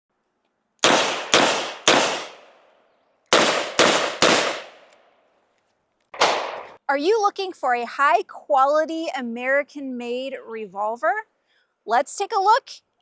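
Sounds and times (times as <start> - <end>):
revolver shots with echo: 6.2 - 6.8.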